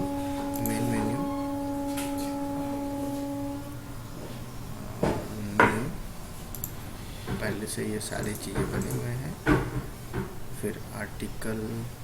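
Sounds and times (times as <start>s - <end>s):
ringing tone: 0.0s - 4.2s.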